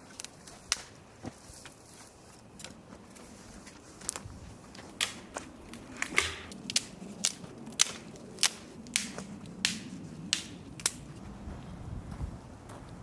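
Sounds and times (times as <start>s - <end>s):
firewood cracking and knocking: 3.7s - 11.1s.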